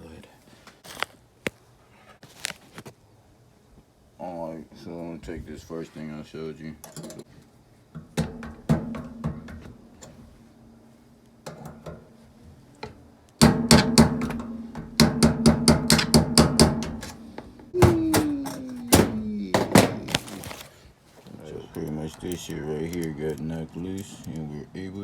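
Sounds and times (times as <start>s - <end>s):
hammer striking metal punch: 8.0s - 20.0s.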